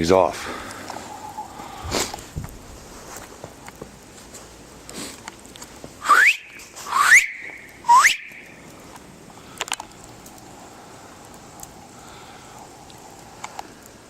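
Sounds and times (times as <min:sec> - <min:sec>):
person whistling rising whistles: 0:06.0 - 0:08.5.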